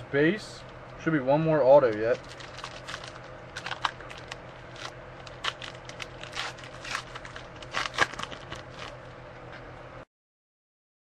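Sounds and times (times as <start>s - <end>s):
wrapper crinkling: 2.1s - 9.0s.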